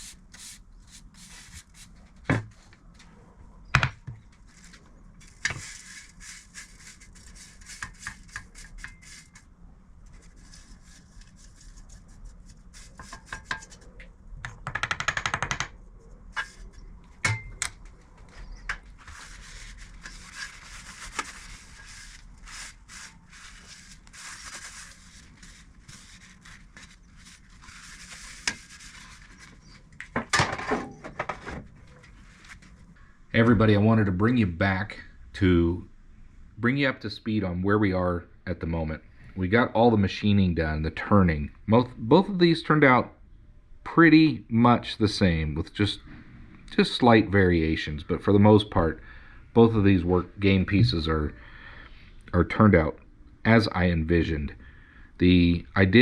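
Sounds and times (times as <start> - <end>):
tools rubbing and scraping: 0.0 - 2.7, 4.4 - 14.1, 15.9 - 17.0, 17.9 - 29.9
sharp knocks and clicks of metal: 14.4 - 15.8, 17.2 - 17.8.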